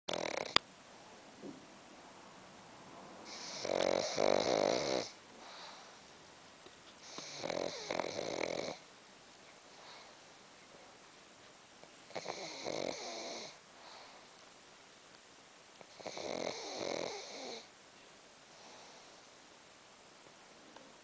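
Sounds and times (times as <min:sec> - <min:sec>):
dog snoring: 0:00.1 - 0:00.6, 0:03.2 - 0:06.0, 0:07.0 - 0:08.9, 0:12.1 - 0:14.2, 0:15.9 - 0:17.7
dog breathing quietly: 0:03.2 - 0:06.2, 0:09.6 - 0:10.9.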